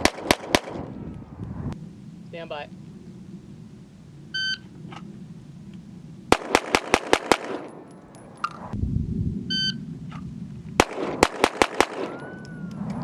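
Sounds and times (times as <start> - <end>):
rapid pistol shots: 0.0 - 0.8, 6.3 - 7.8, 10.8 - 12.2.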